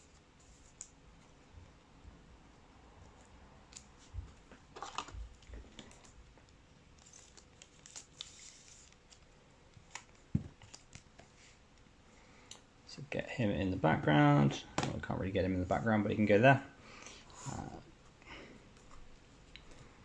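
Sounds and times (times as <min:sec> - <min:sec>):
cards rustling: 0:04.7 - 0:06.2, 0:06.9 - 0:11.3.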